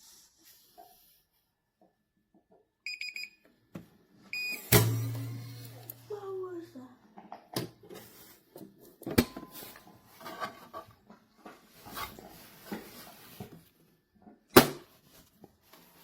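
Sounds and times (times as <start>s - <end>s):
short beep: 2.9s - 3.4s, 4.4s - 5.7s.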